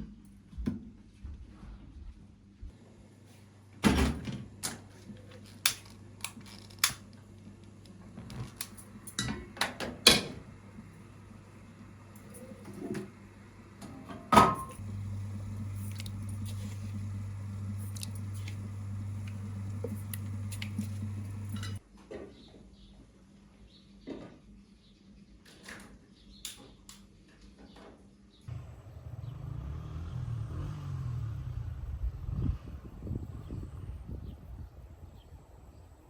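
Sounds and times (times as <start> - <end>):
low electrical hum: 2.3 - 21.8.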